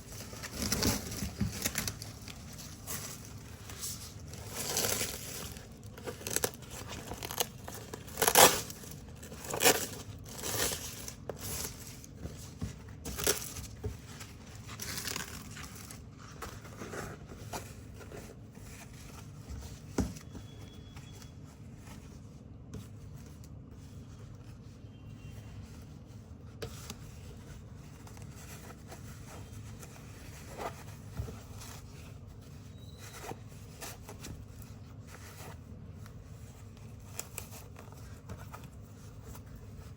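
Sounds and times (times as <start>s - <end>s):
velcro ripping: 8.1s - 8.8s.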